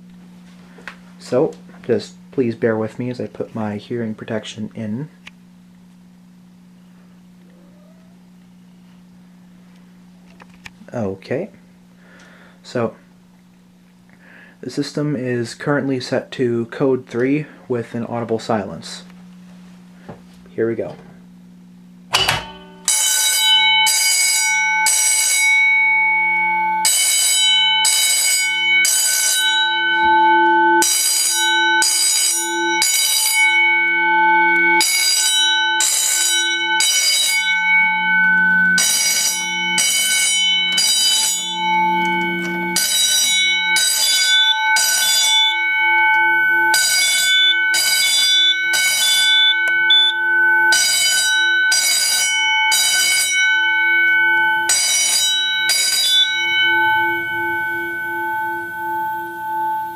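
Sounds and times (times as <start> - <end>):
fire alarm bell ringing: 22.1 - 59.9.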